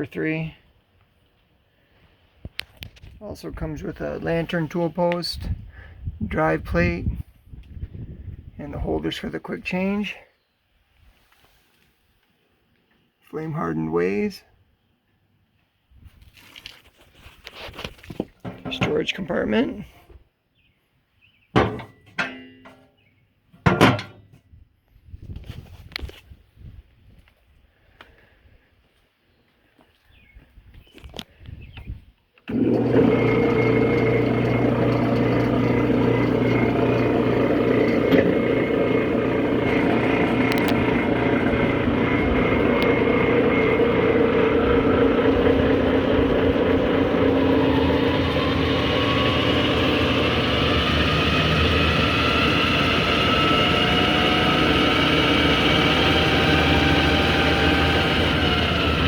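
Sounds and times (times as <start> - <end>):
metal lathe motor humming: 32.5 - 59.0.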